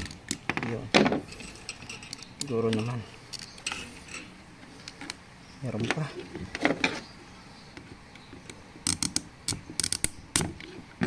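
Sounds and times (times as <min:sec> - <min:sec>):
small parts clicking and clattering: 0:00.0 - 0:05.2, 0:08.4 - 0:10.8.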